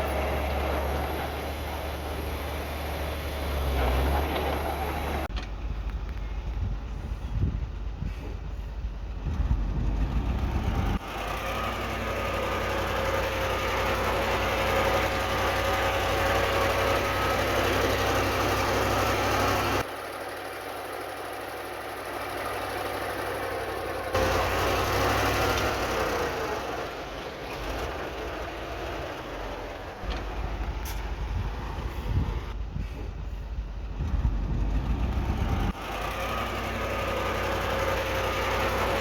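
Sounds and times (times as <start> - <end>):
heavy diesel engines rumbling: 0.0 - 39.0.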